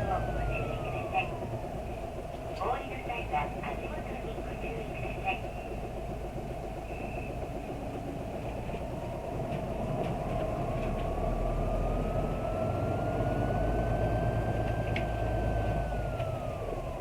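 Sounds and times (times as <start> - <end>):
rising whine: 0.0 - 2.6, 8.9 - 17.0
diesel bus engine rumble: 0.0 - 17.0.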